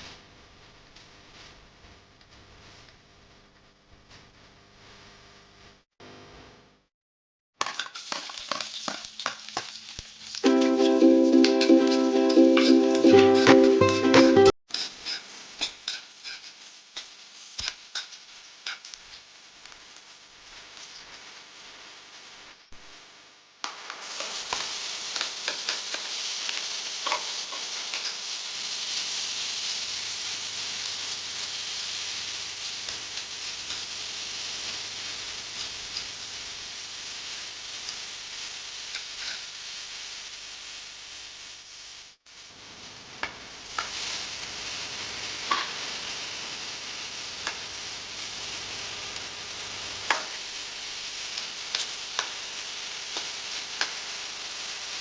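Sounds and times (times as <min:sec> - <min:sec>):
food sizzling in hot oil: 0:07.6 - 0:22.9, 0:23.6 - 0:55.0.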